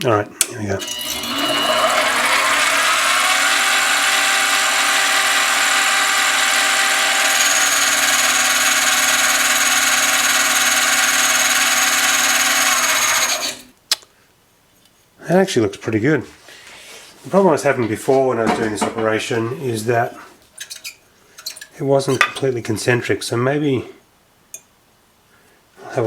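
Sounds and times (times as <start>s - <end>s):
lathe motor and gear whine: 0.8s - 13.7s.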